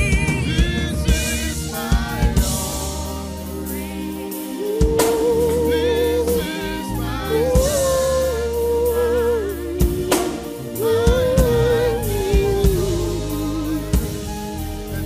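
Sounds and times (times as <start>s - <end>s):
drum hits: 0.0s - 3.9s, 9.8s - 14.6s
sustained backing chords: 0.0s - 15.0s.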